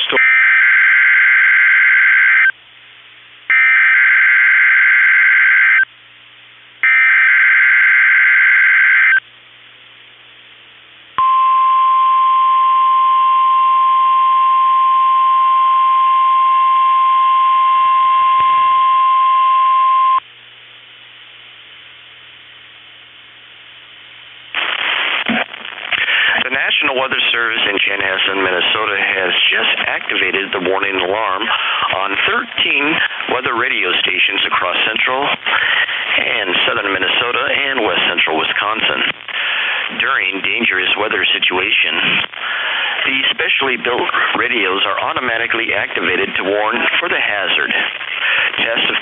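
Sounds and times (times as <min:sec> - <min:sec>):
steady warning alarm tone: 0:00.1 - 0:02.5, 0:03.5 - 0:05.9, 0:06.8 - 0:09.2, 0:11.2 - 0:20.2.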